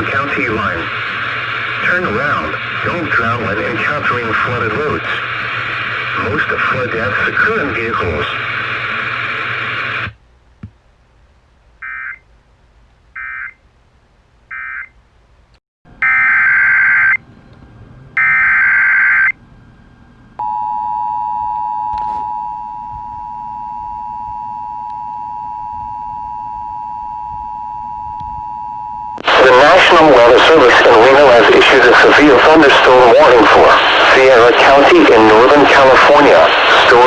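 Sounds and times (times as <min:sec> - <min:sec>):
two-tone attention signal: 0:16.0 - 0:17.2.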